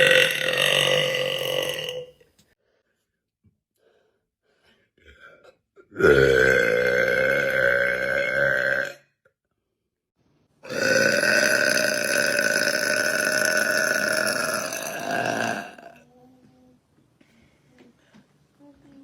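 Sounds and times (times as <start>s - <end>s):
woman burping: 0.0s - 2.2s, 5.8s - 9.0s, 10.6s - 16.0s.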